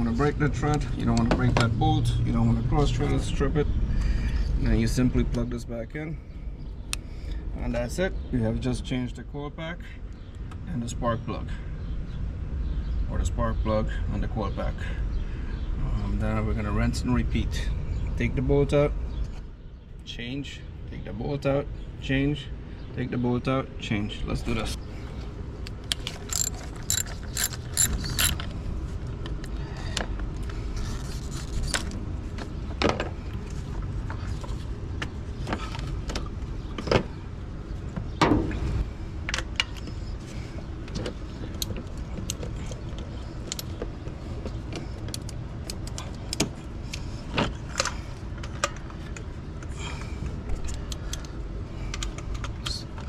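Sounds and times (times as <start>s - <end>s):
socket ratchet clicking: 25.9s - 28.4s
metal tools clattering: 26.2s - 28.4s.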